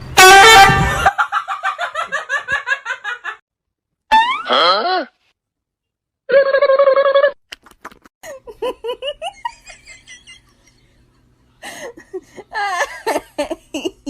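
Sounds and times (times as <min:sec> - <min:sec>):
person giggling: 0:11.6 - 0:14.0.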